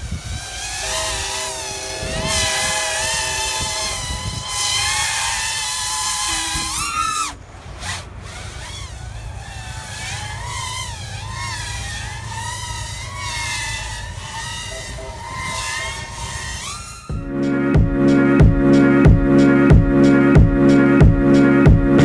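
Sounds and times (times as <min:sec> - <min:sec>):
drone motors buzzing: 0:00.0 - 0:21.5
music: 0:17.1 - 0:22.0.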